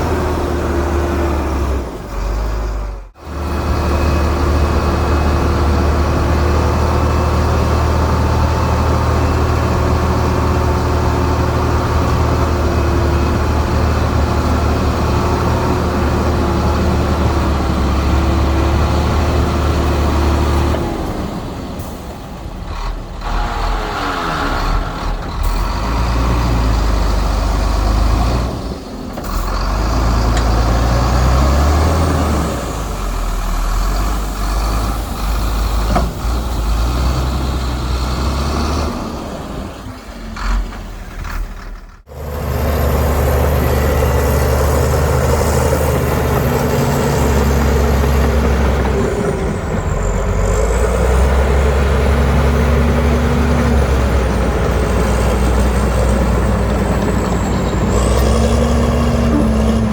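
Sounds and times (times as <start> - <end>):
heavy diesel machinery running: 0.0 - 59.9.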